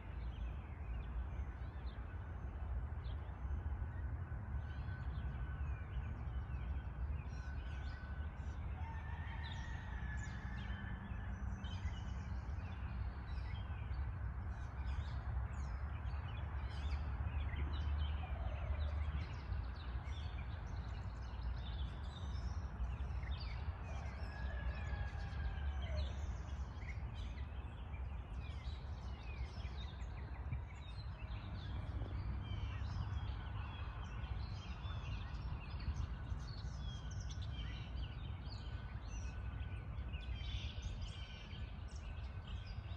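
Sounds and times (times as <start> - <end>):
songbirds chirping and trilling: 0.0 - 42.9.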